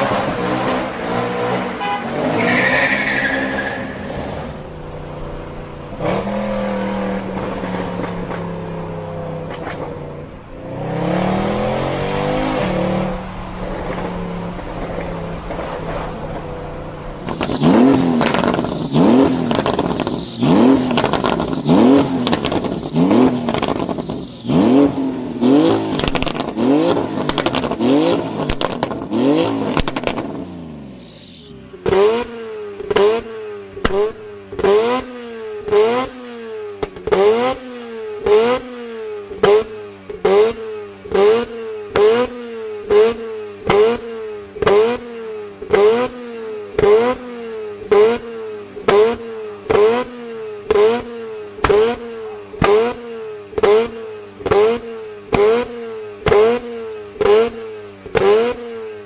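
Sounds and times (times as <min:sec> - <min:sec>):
car engine revving: 0:00.0 - 0:58.9
exhaust pops and bangs: 0:07.1 - 0:08.6, 0:17.2 - 0:24.2, 0:25.9 - 0:26.6, 0:27.2 - 0:27.8, 0:28.4 - 0:29.1, 0:29.7 - 0:30.4, 0:51.6 - 0:52.0, 0:52.6 - 0:53.0.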